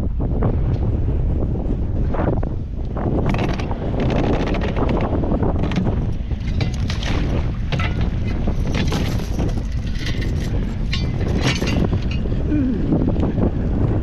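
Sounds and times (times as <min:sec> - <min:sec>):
wind buffeting microphone: 0:00.0 - 0:14.0
short crackles and rustles: 0:03.3 - 0:12.2.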